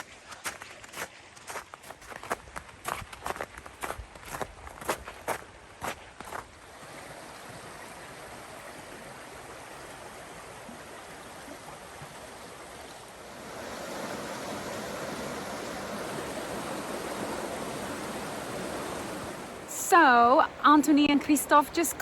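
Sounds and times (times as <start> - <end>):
flowing water rushing: 0.0 - 22.0.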